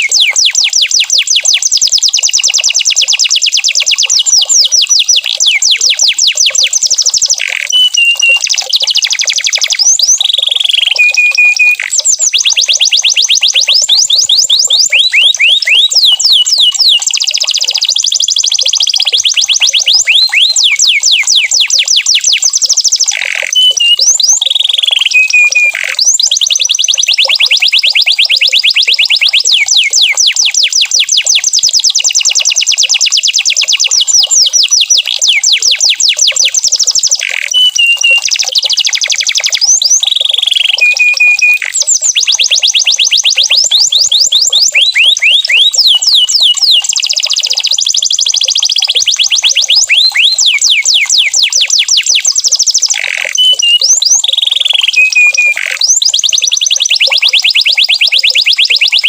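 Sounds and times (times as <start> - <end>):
canary trilling: 0.0 - 59.0
canary short whistles: 7.5 - 8.6, 10.6 - 12.2, 25.0 - 26.2, 37.0 - 38.4, 40.6 - 42.4, 53.0 - 54.1, 54.9 - 56.0.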